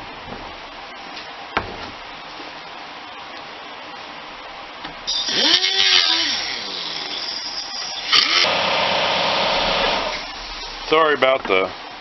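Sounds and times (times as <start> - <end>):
cutoff wheel grinding fiberglass: 5.1 - 10.6
air compressor running: 5.1 - 11.1.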